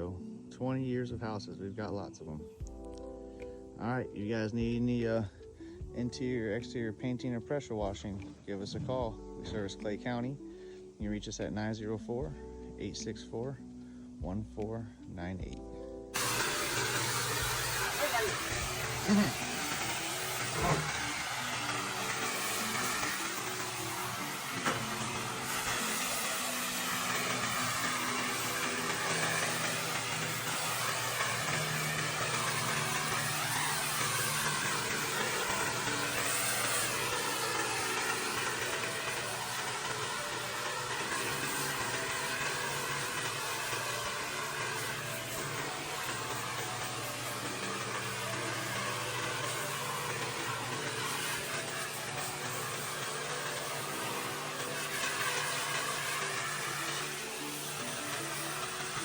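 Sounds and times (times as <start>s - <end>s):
pressure washer engine running: 16.1s - 59.0s
water spray: 16.2s - 59.0s.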